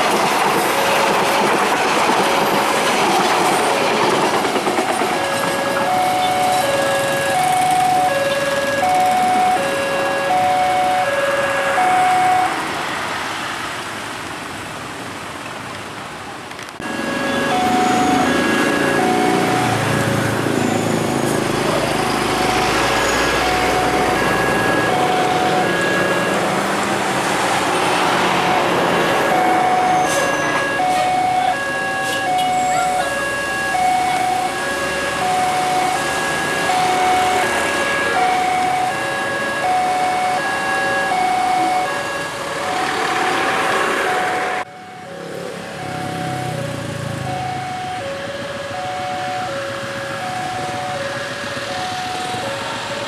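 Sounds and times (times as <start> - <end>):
train wheels rushing on rails: 0.0 - 9.7, 15.5 - 39.0, 41.9 - 44.6
two-note crossing alarm chime: 17.2 - 21.0, 47.2 - 53.0.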